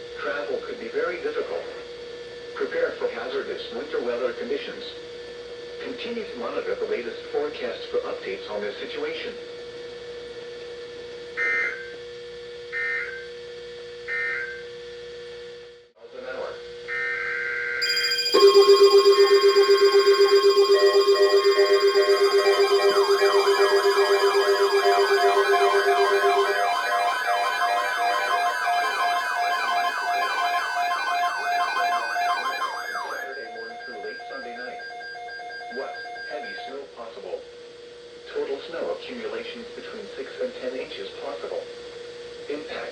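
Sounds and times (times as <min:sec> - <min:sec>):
harsh data tone buzz: 0:17.8 - 0:34.8.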